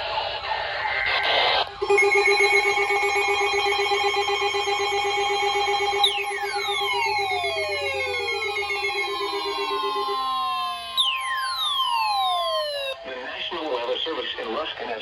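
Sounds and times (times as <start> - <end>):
burst of data noise: 1.7 - 13.0
pulsing electronic alarm tone: 1.7 - 13.0.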